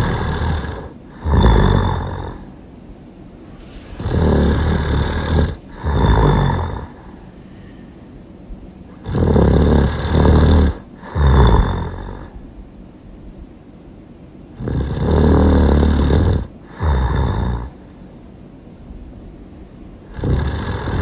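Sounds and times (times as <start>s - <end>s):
loud snoring: 0.0s - 2.5s, 3.6s - 7.2s, 8.9s - 12.4s, 14.6s - 17.8s, 20.1s - 21.0s.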